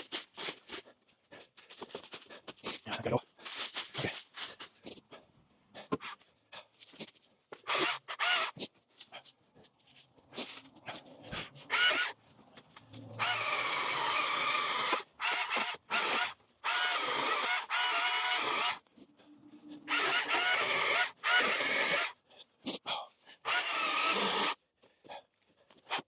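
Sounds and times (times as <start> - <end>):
electric power tool cutting: 7.7 - 8.5, 11.7 - 12.1, 13.2 - 18.8, 19.9 - 22.1, 23.5 - 24.6.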